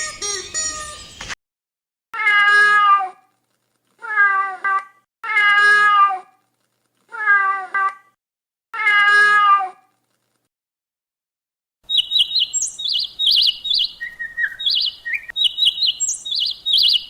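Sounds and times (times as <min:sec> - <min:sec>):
cat meowing: 0:04.0 - 0:06.3, 0:07.1 - 0:08.0.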